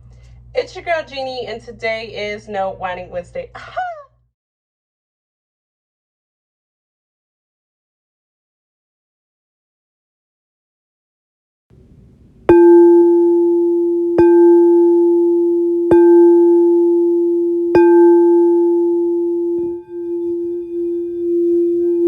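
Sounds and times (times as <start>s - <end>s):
singing bowl ringing: 12.5s - 22.0s
wavering hum: 12.5s - 22.0s.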